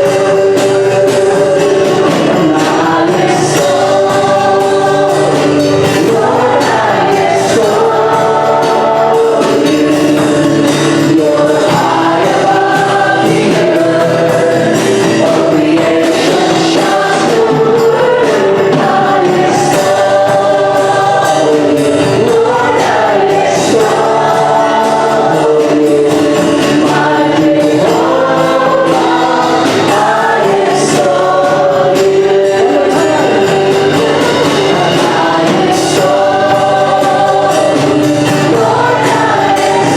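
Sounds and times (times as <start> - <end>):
choir singing gospel song: 0.0 - 39.9
instrumental accompaniment: 0.0 - 39.9.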